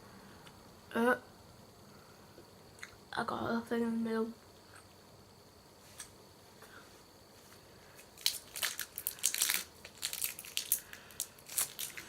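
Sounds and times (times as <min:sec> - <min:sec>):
plastic wrapper crinkling: 0:08.0 - 0:12.0.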